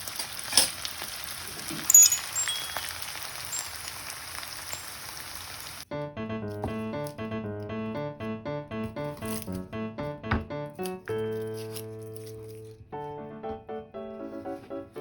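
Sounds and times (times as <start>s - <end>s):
food sizzling in a frying pan: 0.0s - 5.9s
light clinks: 1.8s - 5.7s
music with plucked melody: 5.9s - 15.0s.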